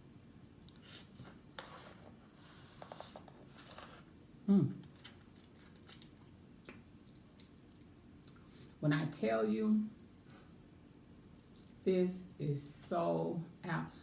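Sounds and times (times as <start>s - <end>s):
person humming mm: 4.5s - 4.8s.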